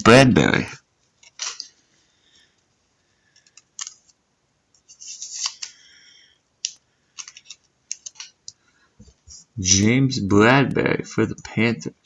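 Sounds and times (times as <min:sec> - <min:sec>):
packaging rustling scrape: 0:04.8 - 0:05.9.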